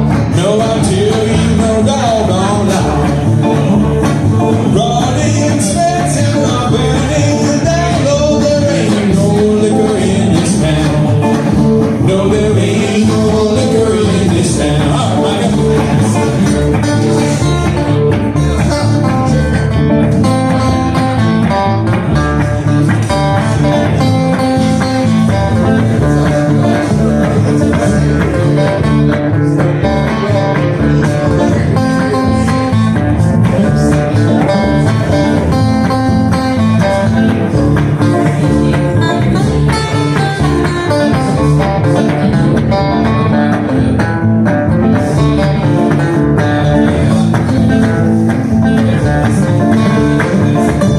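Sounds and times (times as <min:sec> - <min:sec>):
acoustic guitar lead: 0:00.0 - 0:50.9
strummed rhythm guitar: 0:00.0 - 0:50.9
walking bass: 0:00.0 - 0:50.9.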